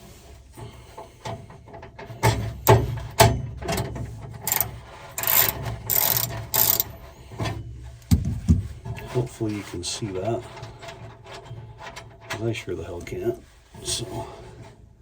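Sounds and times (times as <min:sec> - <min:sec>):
socket ratchet clicking: 0:04.5 - 0:06.9.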